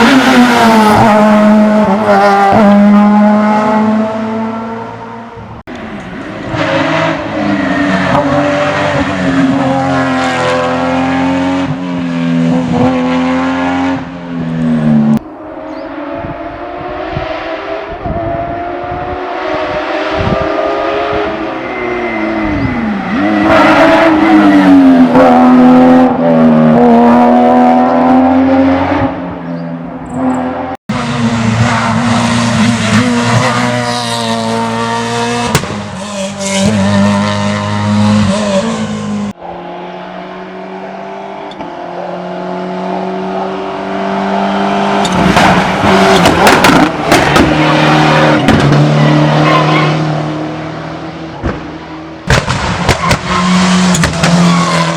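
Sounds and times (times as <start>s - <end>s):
rally car engines revving: 0.0s - 54.9s
exhaust pops and bangs: 35.4s - 35.9s, 45.0s - 47.6s, 48.4s - 48.8s, 51.4s - 54.5s.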